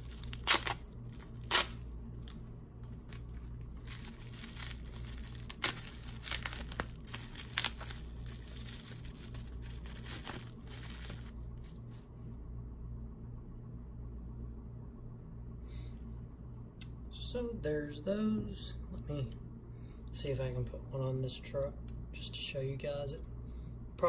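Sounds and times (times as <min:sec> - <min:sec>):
packaging torn and crinkled: 0:00.0 - 0:02.4, 0:03.0 - 0:12.0
steady low hum: 0:00.0 - 0:24.0.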